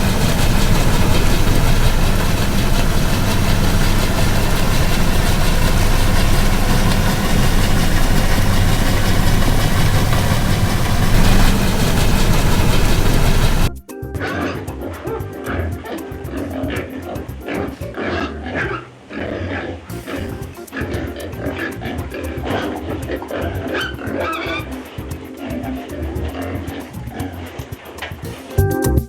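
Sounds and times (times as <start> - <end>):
boat engine droning: 0.0 - 13.7.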